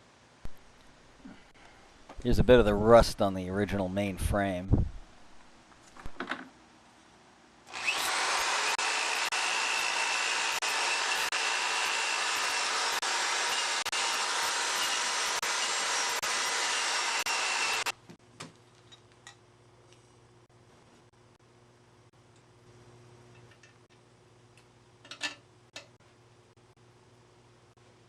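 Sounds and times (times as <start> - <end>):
drill with abrasive disc on steel: 7.7 - 18.0.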